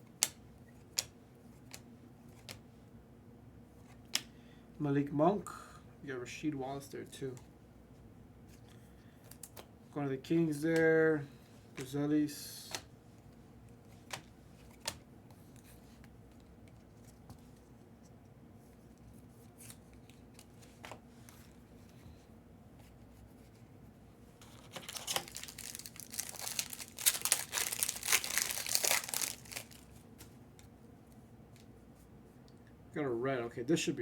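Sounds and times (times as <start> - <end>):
foil wrapper crinkling: 24.4 - 30.0.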